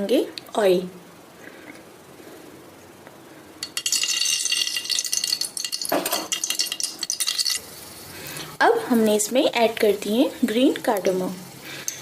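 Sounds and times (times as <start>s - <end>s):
utensils clinking against pot: 3.6s - 7.6s
hot oil sizzling: 3.6s - 12.0s.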